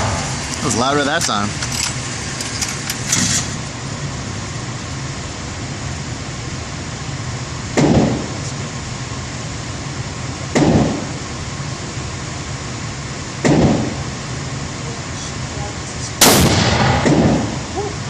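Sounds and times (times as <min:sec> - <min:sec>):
steady background hum: 0:00.0 - 0:18.0
gunshots: 0:16.2 - 0:17.7.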